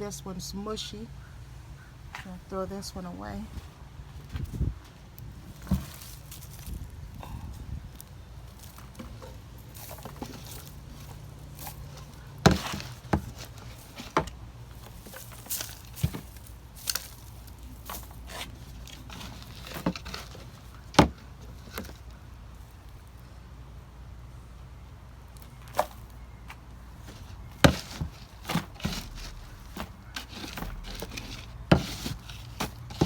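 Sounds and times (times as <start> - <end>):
hands rustling through soil: 4.1 - 23.1, 25.3 - 33.0
potatoes knocking: 9.9 - 17.2, 27.0 - 33.0.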